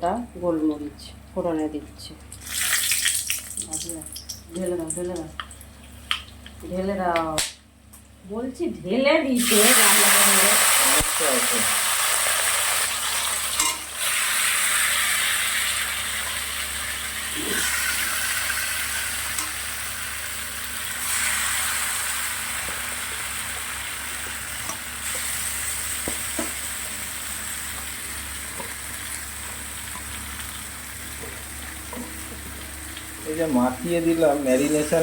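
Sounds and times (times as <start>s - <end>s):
chicken sizzling in oil: 2.4s - 3.6s, 9.4s - 33.4s.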